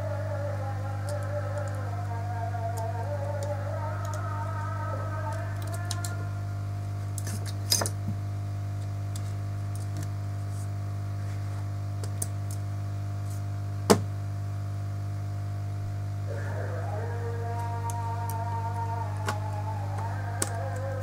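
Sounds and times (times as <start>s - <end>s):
low electrical hum: 0.0s - 21.0s.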